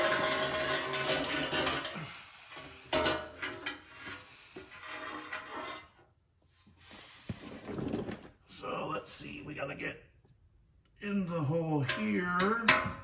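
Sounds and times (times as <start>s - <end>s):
scraping and rubbing: 0.0s - 6.0s.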